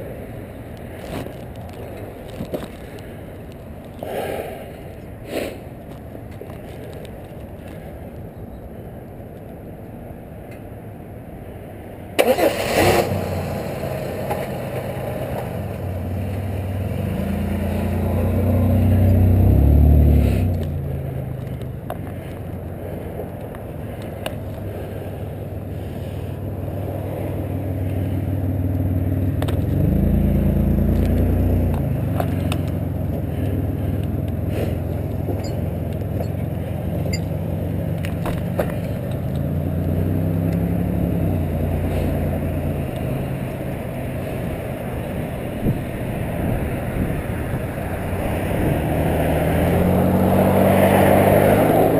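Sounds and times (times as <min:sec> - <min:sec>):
road noise: 0:00.0 - 0:51.9
car engine accelerating: 0:12.2 - 0:23.1, 0:24.0 - 0:51.9.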